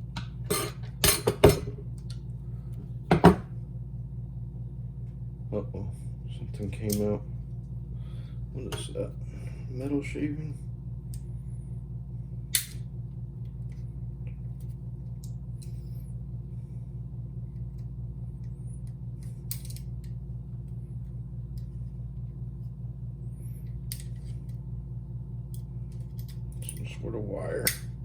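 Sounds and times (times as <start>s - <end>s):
steady low hum: 0.0s - 28.0s
metal latch parts clicking: 19.5s - 19.9s, 25.5s - 26.8s.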